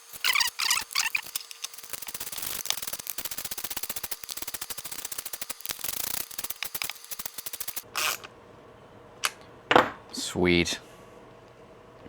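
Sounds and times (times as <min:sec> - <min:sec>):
ratchet wrench clicking: 0:00.0 - 0:08.1.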